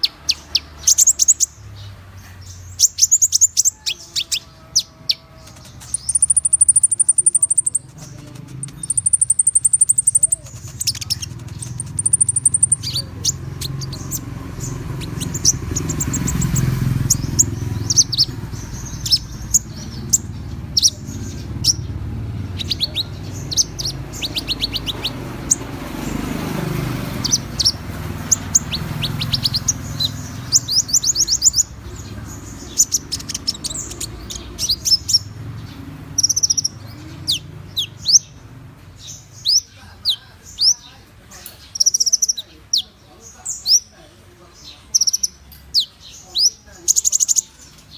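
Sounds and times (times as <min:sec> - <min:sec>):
bird chirps and trills: 0:00.0 - 0:47.9
low background rumble: 0:05.3 - 0:26.0.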